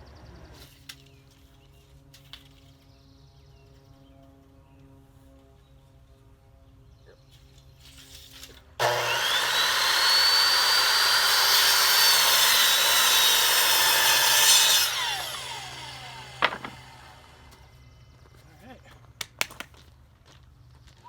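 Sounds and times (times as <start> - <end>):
power saw cutting board: 8.8 - 17.7.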